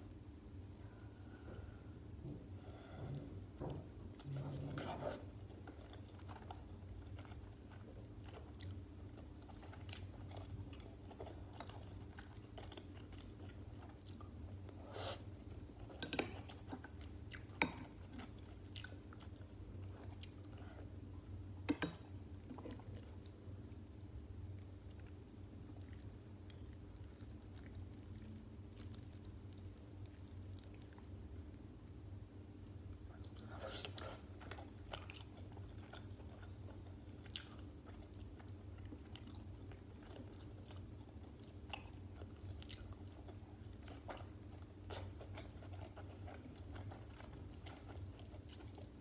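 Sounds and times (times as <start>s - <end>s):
steady low hum: 0.0s - 49.0s
wet chewing sounds: 22.4s - 31.7s, 32.5s - 49.0s.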